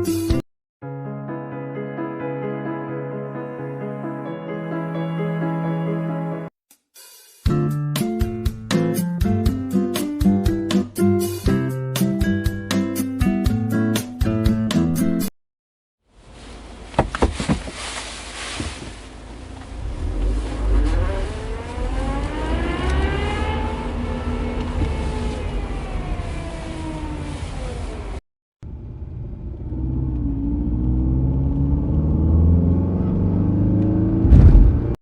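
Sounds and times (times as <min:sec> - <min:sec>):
vehicle engine revving: 0:19.2 - 0:26.9, 0:28.8 - 0:35.0
low rumble: 0:34.0 - 0:35.0.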